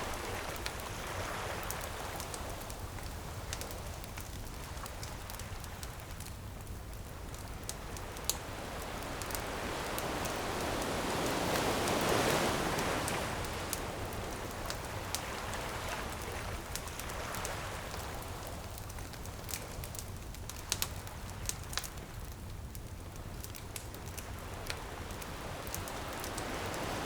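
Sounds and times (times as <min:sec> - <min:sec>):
bonfire crackling and popping: 0:00.0 - 0:27.0
ocean wave breaking: 0:08.4 - 0:16.4.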